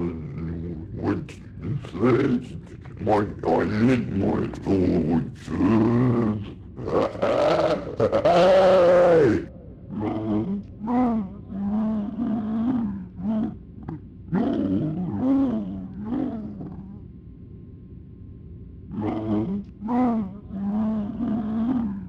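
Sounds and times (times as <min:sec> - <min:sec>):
distorted garbled voice groaning: 0:00.0 - 0:13.1.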